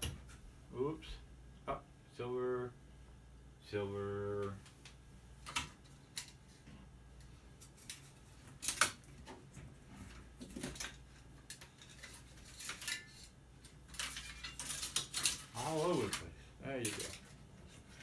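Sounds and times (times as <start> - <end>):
clicks and clinks of small parts: 5.4 - 6.4, 10.4 - 18.0.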